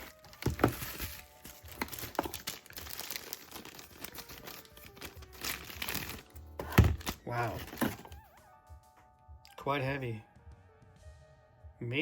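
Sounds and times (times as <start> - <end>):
plastic packaging crinkling and tearing: 0.0 - 8.2
faint background music: 0.0 - 12.0.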